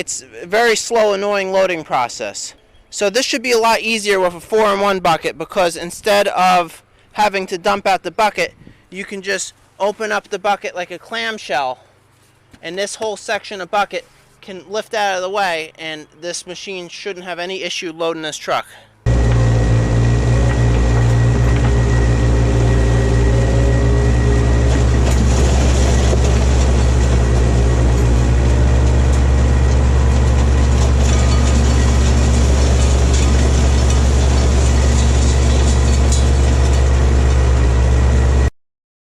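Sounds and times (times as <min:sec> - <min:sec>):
loader engine rumbling: 0:19.1 - 0:38.5.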